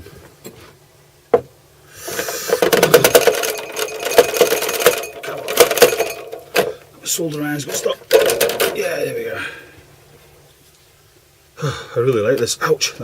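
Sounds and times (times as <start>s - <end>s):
soldering iron rattling in stand: 2.5s - 6.8s.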